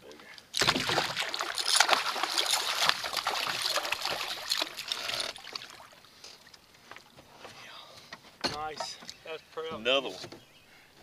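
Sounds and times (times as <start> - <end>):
water splashing from thrashing fish: 0.5 - 6.2.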